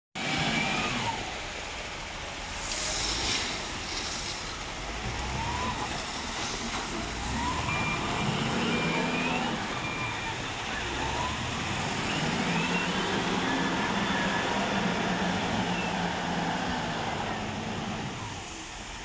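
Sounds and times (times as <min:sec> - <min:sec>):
diesel engine revving: 0:00.2 - 0:19.0
short hissing bursts: 0:02.4 - 0:04.9.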